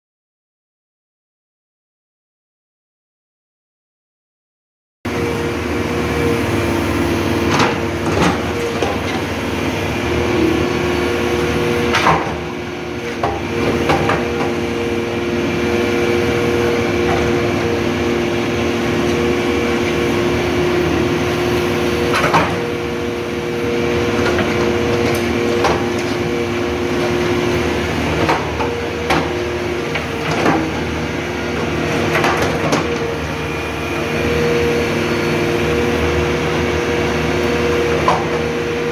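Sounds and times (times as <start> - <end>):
diesel engine running: 5.1 - 38.9.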